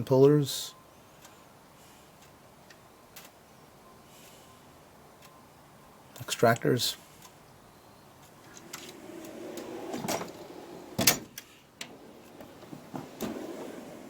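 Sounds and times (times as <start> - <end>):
toolbox drawer rolling on slides: 8.4 - 14.0
drawer stopping with knock: 12.2 - 14.0.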